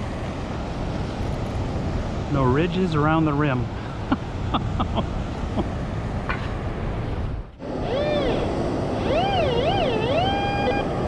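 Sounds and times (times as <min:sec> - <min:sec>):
wind: 0:00.0 - 0:11.0
metal detector tone gliding: 0:07.8 - 0:11.0.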